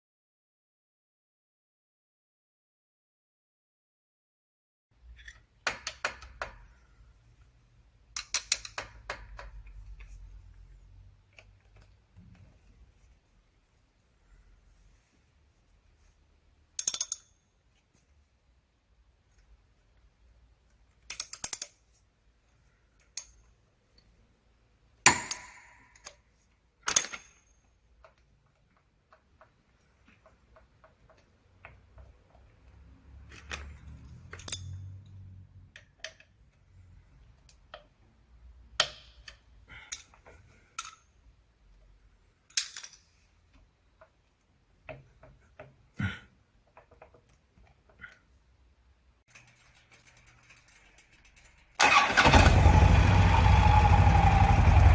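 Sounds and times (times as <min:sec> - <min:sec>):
metal tools clinking: 0:16.8 - 0:17.3, 0:33.4 - 0:34.9.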